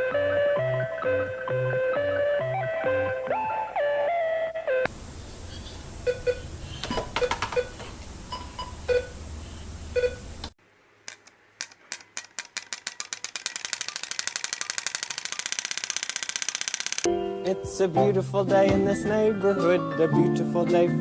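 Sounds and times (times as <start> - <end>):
short electronic beeps: 5.4 - 9.2, 9.9 - 10.3
mechanical clicking: 10.2 - 17.1.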